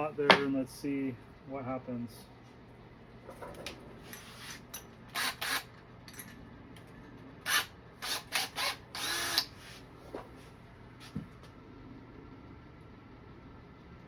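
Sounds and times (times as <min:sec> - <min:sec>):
power drill cutting a hole: 0:05.2 - 0:05.7, 0:07.5 - 0:09.5.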